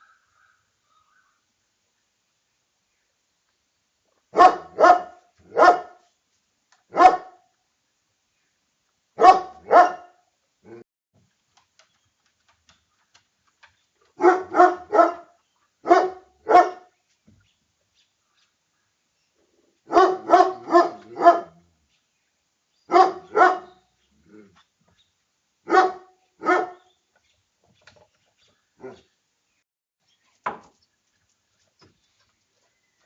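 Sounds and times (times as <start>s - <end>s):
dog barking: 4.3s - 6.0s, 6.9s - 7.4s, 9.2s - 10.2s, 14.2s - 16.9s, 19.9s - 21.6s, 22.9s - 23.8s, 25.6s - 26.9s.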